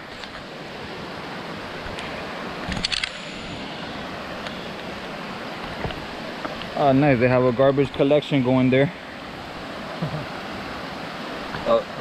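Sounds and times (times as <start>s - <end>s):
waterfall rushing: 0.0s - 12.0s
sharp clicks: 2.7s - 3.4s.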